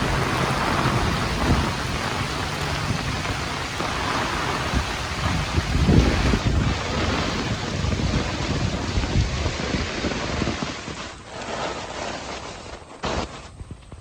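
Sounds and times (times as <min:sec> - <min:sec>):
heavy rain downpour: 0:00.0 - 0:11.0
gusting wind: 0:00.0 - 0:12.9.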